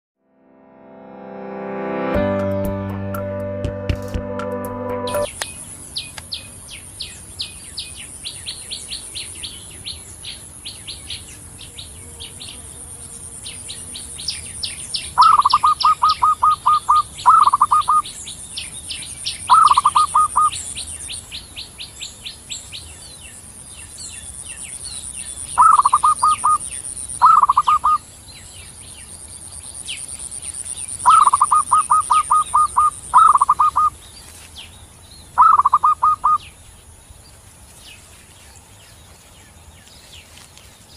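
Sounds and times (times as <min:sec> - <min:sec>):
small bird chirps: 0:13.5 - 0:40.9
dove cooing: 0:25.6 - 0:26.6, 0:31.1 - 0:33.9, 0:35.4 - 0:36.4.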